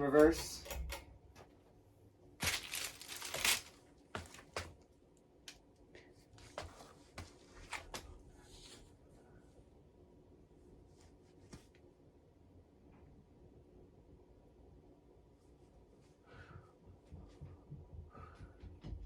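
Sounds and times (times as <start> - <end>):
ceiling fan running: 0.0 - 19.0
crinkling noise: 2.4 - 4.7.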